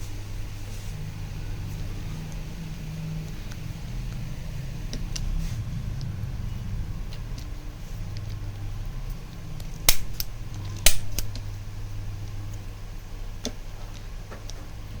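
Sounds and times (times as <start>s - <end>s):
steady low hum: 0.0s - 15.0s
metallic adjusting gun clicks: 9.9s - 11.4s.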